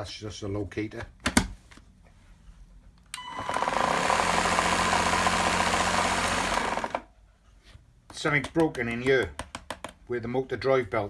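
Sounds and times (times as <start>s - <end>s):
vacuum cleaner motor whining: 3.2s - 7.1s.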